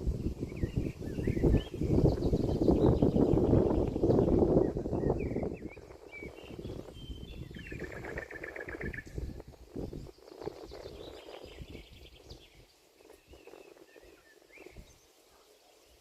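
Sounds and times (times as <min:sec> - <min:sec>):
songbirds chirping and trilling: 0:00.0 - 0:16.0.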